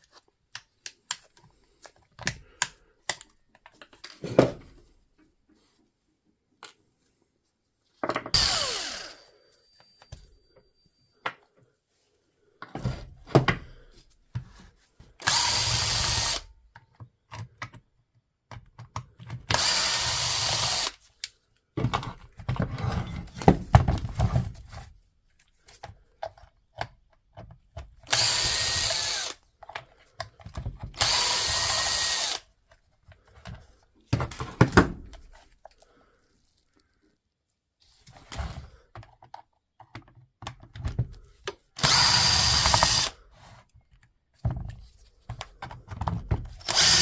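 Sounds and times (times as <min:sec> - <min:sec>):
cordless power tool motor spinning: 0:08.4 - 0:09.3, 0:15.2 - 0:16.5, 0:19.5 - 0:21.0, 0:28.1 - 0:29.4, 0:30.9 - 0:32.4, 0:41.8 - 0:43.2, 0:46.6 - 0:47.0.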